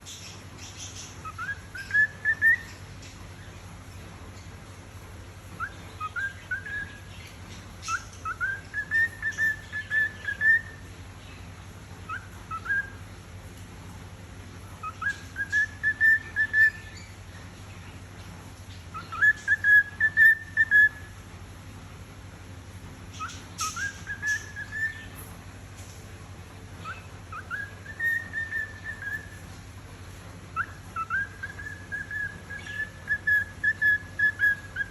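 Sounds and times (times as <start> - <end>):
cockatiel whistling: 1.2 - 2.8, 5.6 - 7.0, 7.8 - 10.8, 12.1 - 13.0, 14.8 - 17.0, 18.9 - 21.1, 23.2 - 25.1, 26.8 - 29.4, 30.6 - 34.9.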